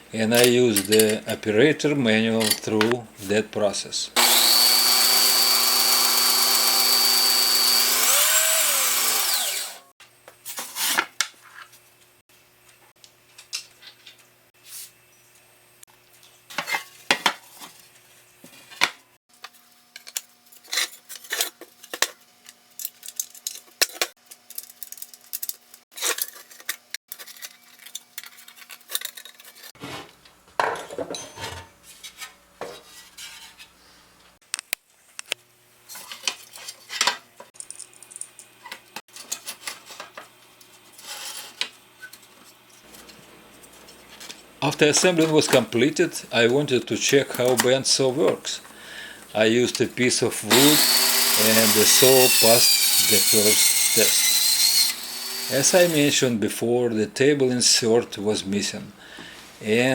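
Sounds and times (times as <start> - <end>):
metal tools clinking and tapping: 30.7 - 31.7.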